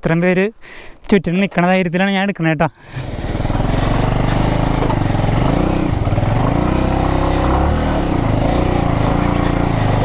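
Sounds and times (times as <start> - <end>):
motorcycle engine revving hard: 2.9 - 10.0.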